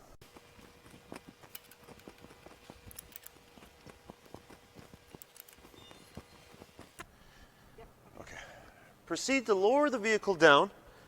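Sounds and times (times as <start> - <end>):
wheel wrench clicking on bolts: 1.1 - 6.1.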